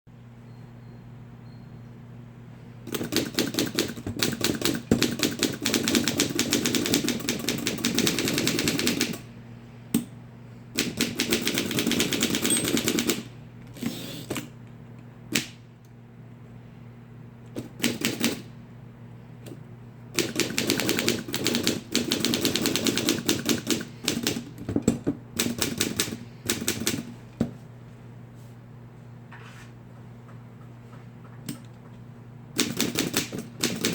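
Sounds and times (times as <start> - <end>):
steady low hum: 0.1 - 33.9
rapid typing on keys: 2.9 - 9.2, 10.8 - 13.2, 20.2 - 24.4, 25.4 - 27.0, 32.6 - 33.9.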